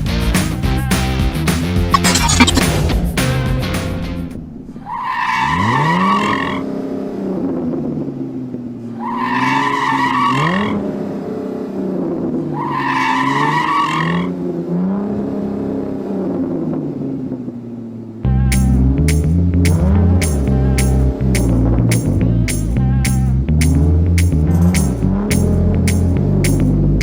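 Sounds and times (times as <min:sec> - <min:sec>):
tire squeal: 0:04.7 - 0:07.9, 0:08.8 - 0:11.0, 0:12.5 - 0:14.4
car engine revving hard: 0:05.2 - 0:17.5.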